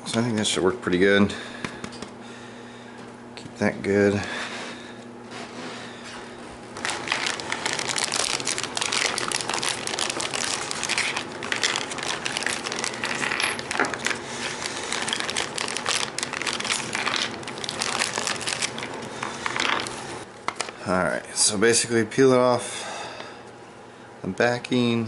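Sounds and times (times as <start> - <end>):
plastic packaging crinkling: 6.7 - 20.7.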